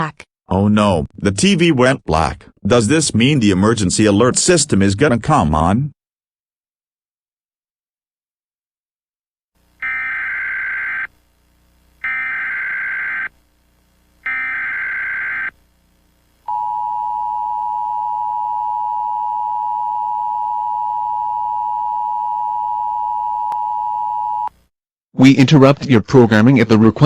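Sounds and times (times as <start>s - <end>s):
buzzy data screech: 14.2s - 15.5s.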